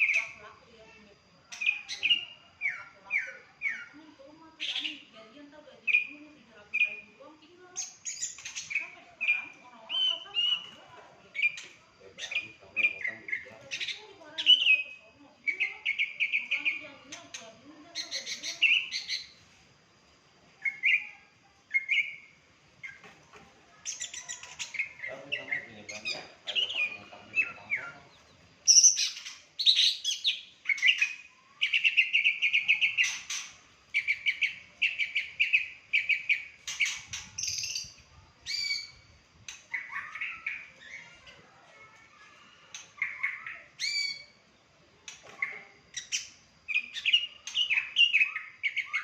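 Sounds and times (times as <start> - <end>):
songbird singing trills: 0.0 - 49.0.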